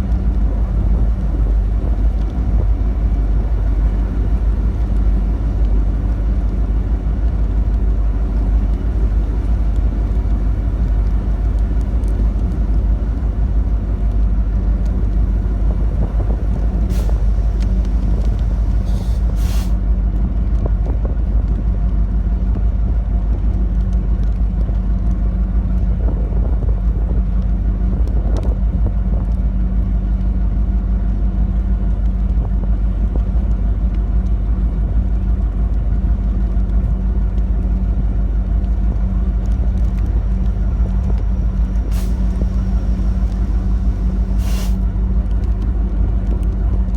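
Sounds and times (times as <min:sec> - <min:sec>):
steady hum: 0:00.0 - 0:23.0, 0:29.6 - 0:46.9
vehicle low rumble: 0:00.0 - 0:46.9
brief hisses: 0:18.6 - 0:19.8, 0:41.9 - 0:44.8.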